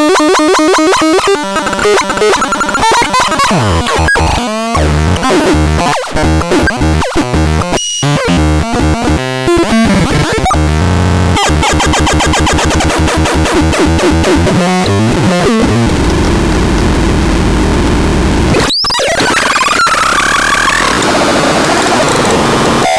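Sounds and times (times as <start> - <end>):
buzzy synthesizer tones: 0.0 - 22.9
noisy synthesizer drones: 0.7 - 18.6.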